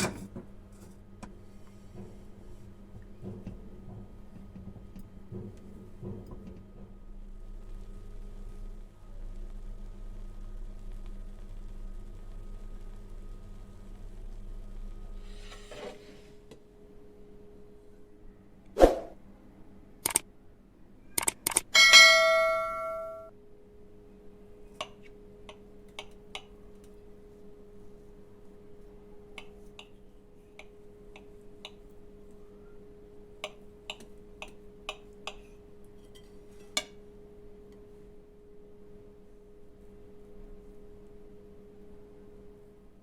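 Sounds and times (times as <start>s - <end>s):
sharp clicks: 20.0s - 20.2s, 21.2s - 21.7s.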